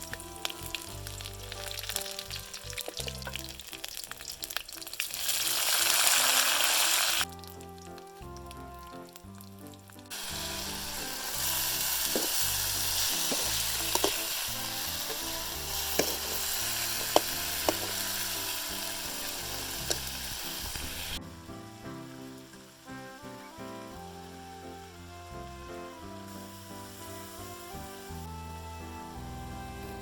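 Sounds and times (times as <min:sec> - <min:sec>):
food sizzling in hot oil: 0:00.0 - 0:21.2, 0:26.0 - 0:28.3.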